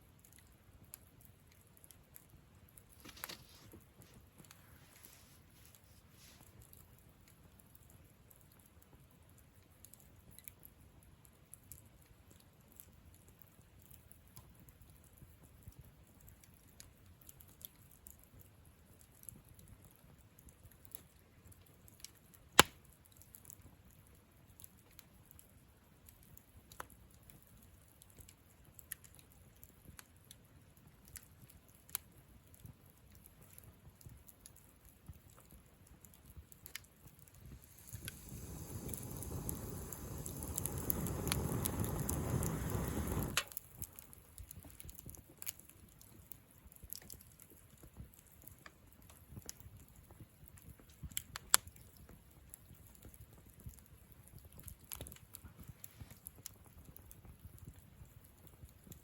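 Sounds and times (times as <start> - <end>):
campfire crackling: 0.0 - 59.0
loud pop from fire: 22.6 - 22.8, 37.5 - 43.6.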